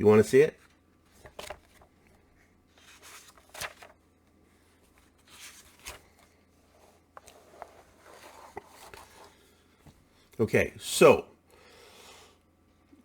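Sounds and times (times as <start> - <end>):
paper pages rustling: 1.1 - 9.5.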